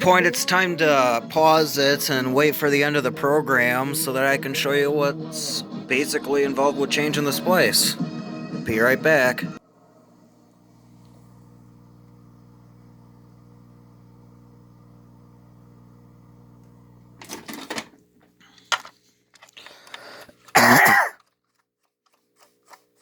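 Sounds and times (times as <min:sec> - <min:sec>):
low electrical hum: 0:09.6 - 0:20.8
person coughing: 0:20.5 - 0:21.2.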